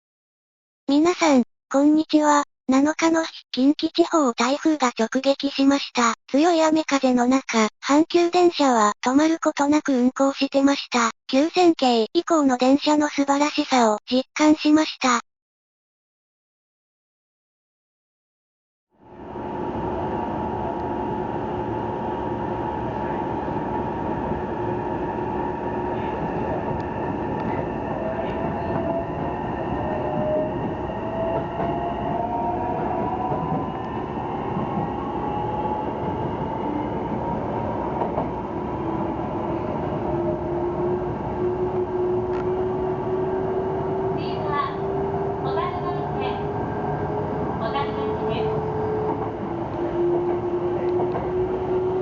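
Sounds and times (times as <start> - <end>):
electric train motor whine: 38.4 - 44.2, 46.4 - 52.0.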